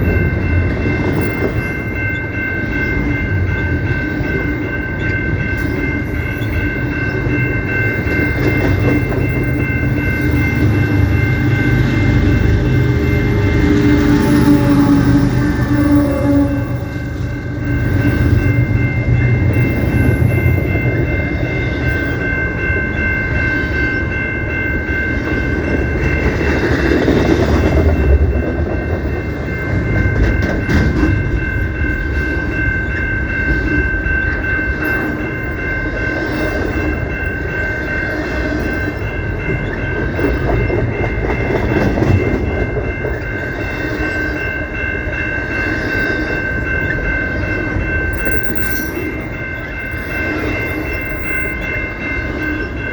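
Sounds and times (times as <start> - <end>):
steady high-pitched tones: 0.0 - 52.9
train rolling past: 0.0 - 52.9.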